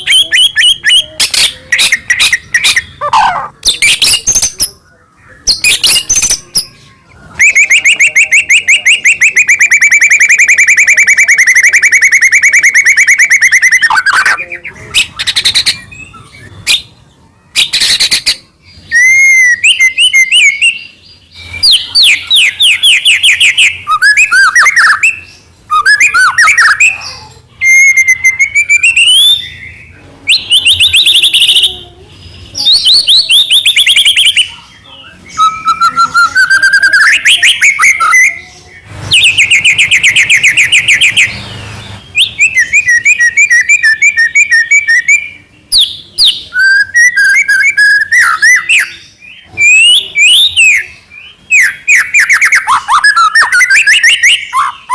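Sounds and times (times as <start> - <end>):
bird singing whistled phrases: 0.0 - 16.9, 17.5 - 31.8, 32.6 - 41.3, 42.1 - 54.9
fast rattling bird trill: 32.5 - 54.9.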